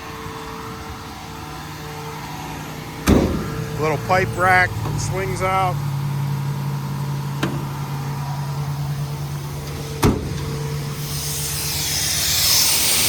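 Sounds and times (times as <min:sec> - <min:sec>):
diesel engine idling: 0:00.0 - 0:13.0
compressed air hissing: 0:08.9 - 0:13.0.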